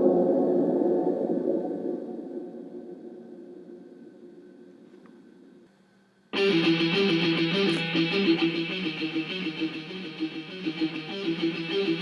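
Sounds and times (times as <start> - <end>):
plucked guitar music: 6.4 - 12.0.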